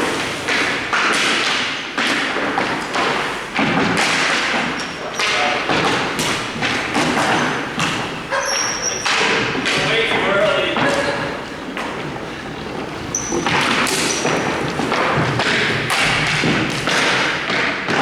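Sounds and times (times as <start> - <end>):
heavy thuds and knocks: 13.4 - 18.0.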